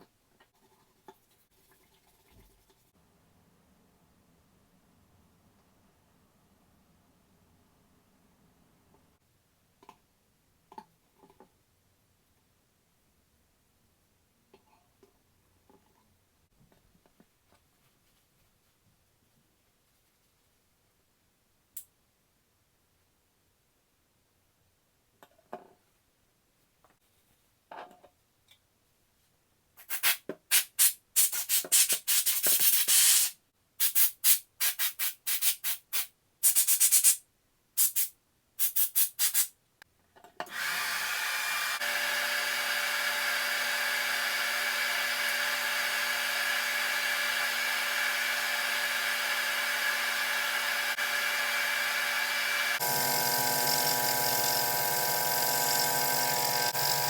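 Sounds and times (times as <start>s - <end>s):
small electric motor humming: 40.5s - 57.0s.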